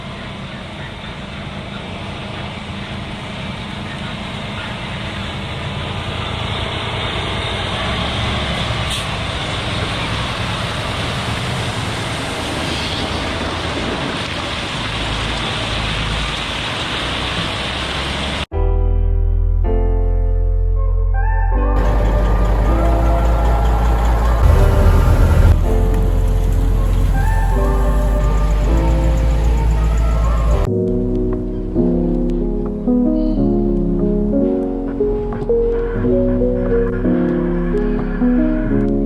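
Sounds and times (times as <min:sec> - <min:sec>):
truck engine and road rumble: 0:00.0 - 0:18.5, 0:21.8 - 0:30.7.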